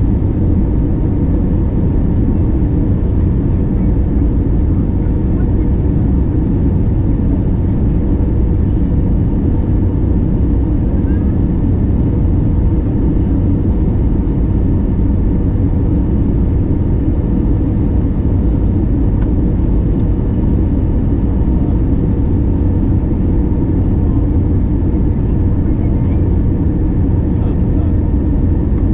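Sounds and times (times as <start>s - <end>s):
airliner cabin engine rumble: 0.0s - 28.9s
faint constant hum: 0.0s - 28.9s.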